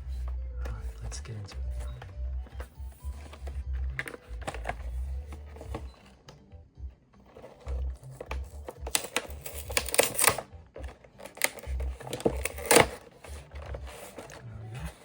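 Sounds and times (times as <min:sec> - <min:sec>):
cardboard crackling and tearing: 0:07.4 - 0:15.0.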